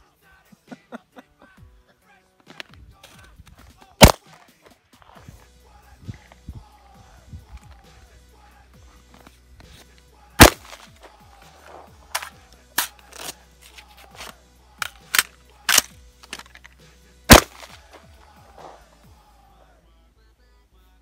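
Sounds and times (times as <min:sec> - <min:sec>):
faint background music: 0:00.0 - 0:21.0
gunshots: 0:04.0 - 0:04.4, 0:10.4 - 0:10.9, 0:11.6 - 0:13.3, 0:14.2 - 0:16.6, 0:17.3 - 0:18.9.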